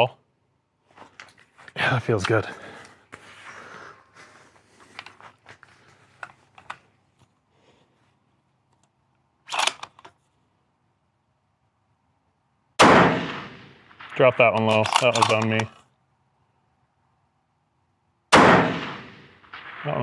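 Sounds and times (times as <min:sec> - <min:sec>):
rifle handling clicks and rustling: 0:00.8 - 0:03.2, 0:04.2 - 0:07.4, 0:08.4 - 0:10.4, 0:14.4 - 0:16.0.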